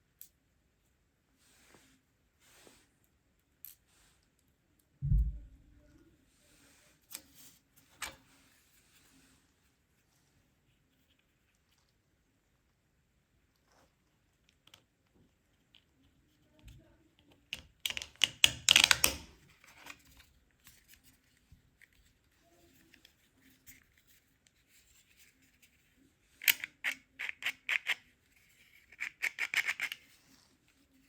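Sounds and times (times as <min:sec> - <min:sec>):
plastic parts clicking and rattling: 0:17.5 - 0:21.0, 0:28.8 - 0:30.1.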